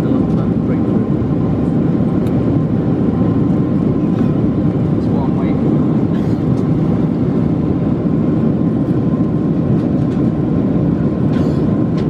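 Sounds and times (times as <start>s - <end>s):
airliner cabin engine noise: 0.0s - 12.0s.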